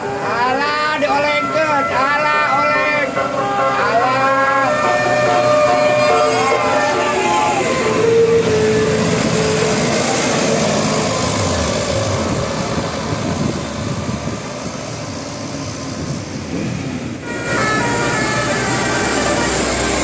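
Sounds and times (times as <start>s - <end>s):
multi-tone bus horn melody: 0.0s - 11.2s, 17.2s - 20.0s
bus engine passing: 0.0s - 20.0s.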